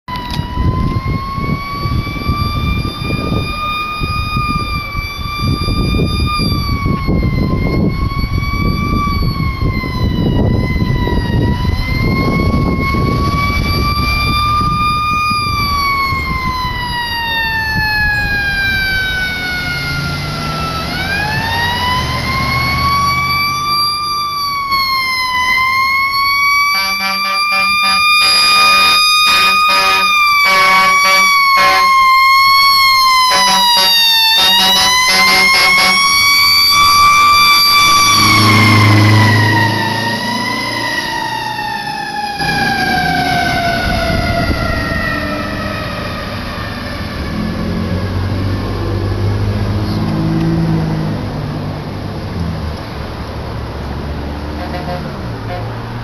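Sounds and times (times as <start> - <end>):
fire engine siren wailing: 0.0 - 56.0
air horn blasts: 26.7 - 32.0, 33.2 - 36.2, 54.6 - 55.8.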